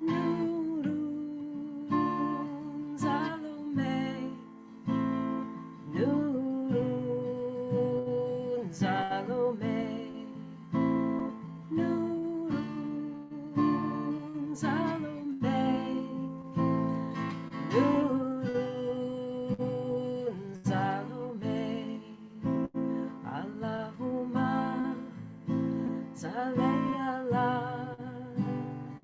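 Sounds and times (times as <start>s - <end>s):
acoustic guitar strumming: 0.0s - 29.0s
person singing a chant: 11.7s - 16.5s, 17.7s - 28.5s.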